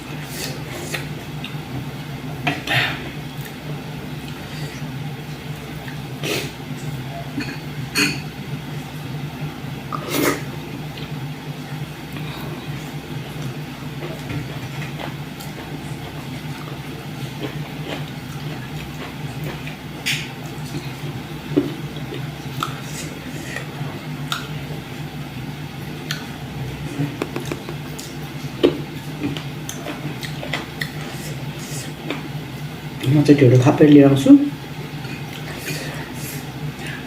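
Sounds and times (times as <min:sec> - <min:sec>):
low background hum: 0:00.0 - 0:37.0
squishing and smacking of food: 0:25.8 - 0:31.1.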